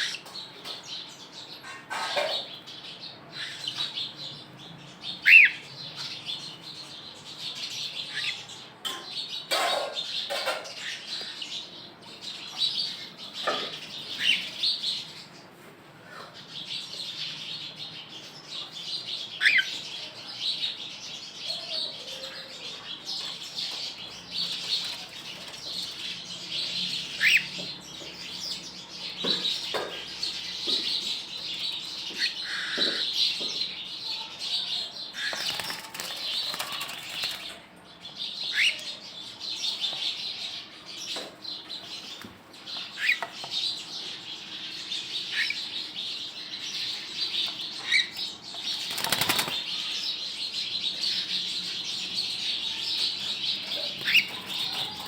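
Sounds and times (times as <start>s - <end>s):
cockatiels chirping: 53.6s - 55.0s.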